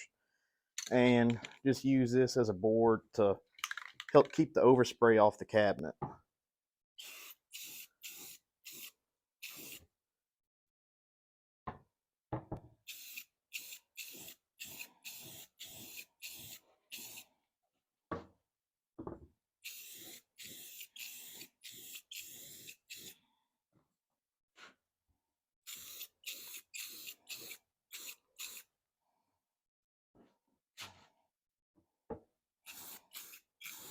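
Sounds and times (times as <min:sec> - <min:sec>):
spray paint hissing bursts: 0:07.0 - 0:09.8, 0:12.9 - 0:17.2, 0:19.7 - 0:23.1, 0:25.7 - 0:28.6, 0:32.7 - 0:33.9.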